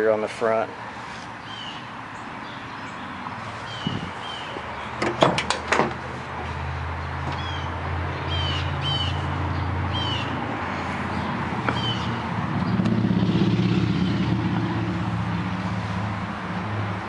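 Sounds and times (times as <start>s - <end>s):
vehicle engine humming: 0.0s - 17.0s.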